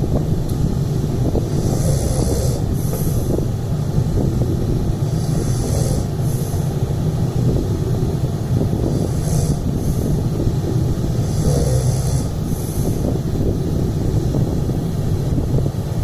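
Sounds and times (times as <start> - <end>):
man snoring: 1.4 - 3.4, 5.0 - 6.7, 8.7 - 13.5.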